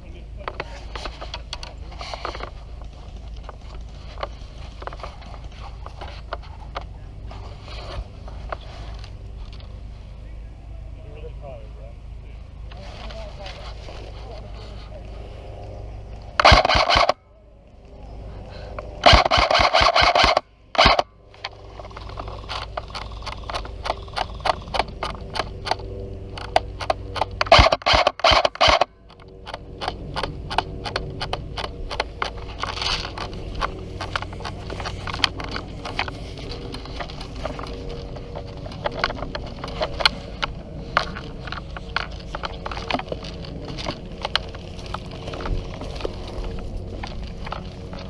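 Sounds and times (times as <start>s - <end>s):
footsteps crackling through dry leaves: 31.8s - 48.0s.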